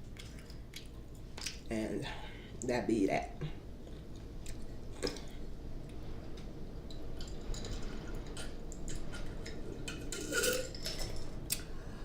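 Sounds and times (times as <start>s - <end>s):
wet chewing and mouth sounds: 0.0s - 1.7s, 3.8s - 6.0s.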